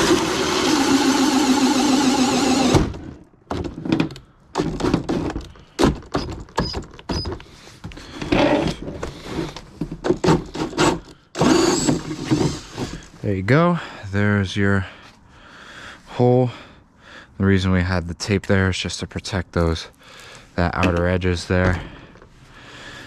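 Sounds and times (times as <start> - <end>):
drill cutting through plastic: 0.0 - 3.0, 10.8 - 13.0
knocks and scrapes of handling: 3.5 - 11.2, 11.8 - 13.2.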